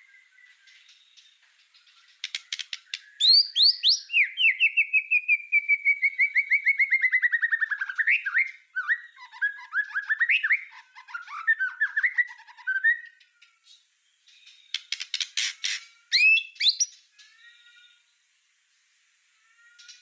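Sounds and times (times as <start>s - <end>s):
bird song with rapid notes: 0.0s - 18.9s, 19.5s - 20.0s
whistled bird phrases: 1.8s - 15.0s, 15.6s - 18.0s, 19.5s - 20.0s
bird clicks: 2.1s - 3.1s, 14.7s - 15.4s.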